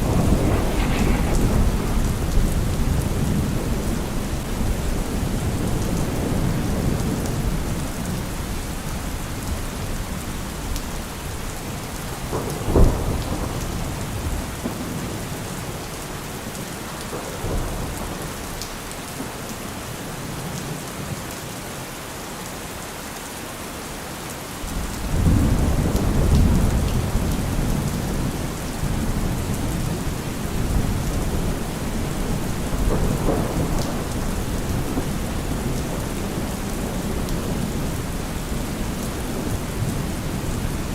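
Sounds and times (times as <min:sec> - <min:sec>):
thunder crack: 0:00.0 - 0:05.2
low thunder rumble: 0:00.0 - 0:07.8
steady rain: 0:00.0 - 0:40.9.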